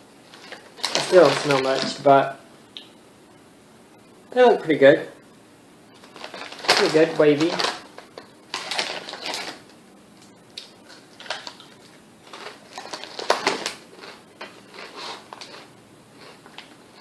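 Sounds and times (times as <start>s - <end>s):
crunching potato chips: 0.3s - 2.0s, 6.0s - 9.6s, 10.6s - 17.0s.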